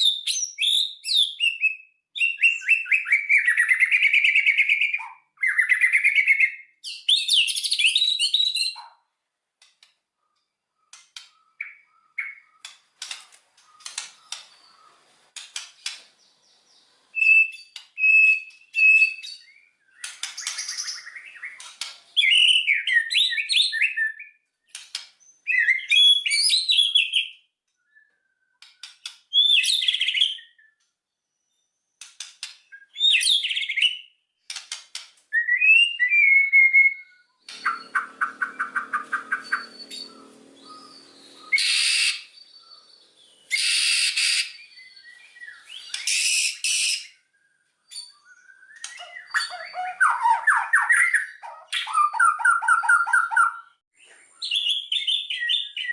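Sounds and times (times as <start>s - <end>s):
bird singing whistled notes: 0.0s - 8.8s, 10.2s - 12.7s, 16.2s - 24.4s, 25.2s - 28.6s, 29.3s - 32.0s, 32.7s - 34.1s, 35.3s - 55.9s
bird harsh rasping notes: 37.5s - 47.1s.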